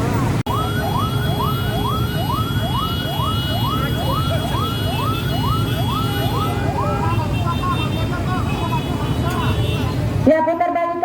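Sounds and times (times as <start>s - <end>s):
emergency vehicle siren sweeping: 0.0s - 7.3s
engines rumbling in traffic: 0.0s - 11.0s.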